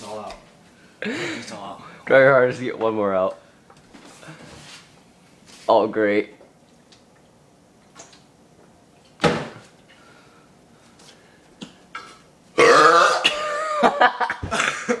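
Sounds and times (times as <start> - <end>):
person burping: 12.6 - 13.8, 14.4 - 15.0.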